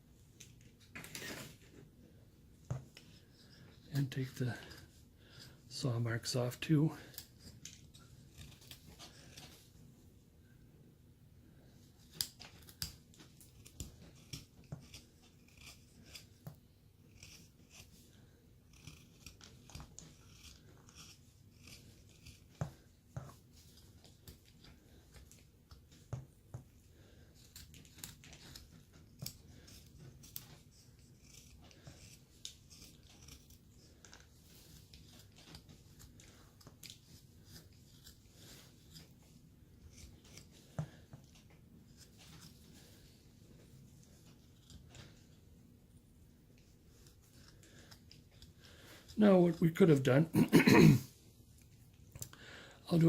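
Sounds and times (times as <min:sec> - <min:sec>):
carving blade slicing wood: 0:12.0 - 0:18.1, 0:18.7 - 0:25.9, 0:27.3 - 0:42.6.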